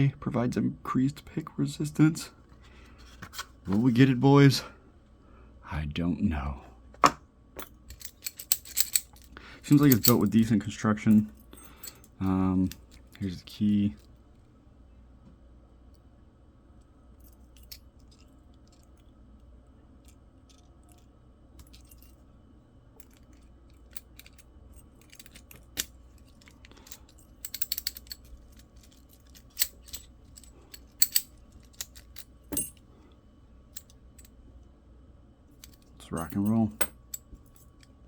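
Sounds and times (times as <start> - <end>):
padlock and key clicking: 26.5 - 32.8.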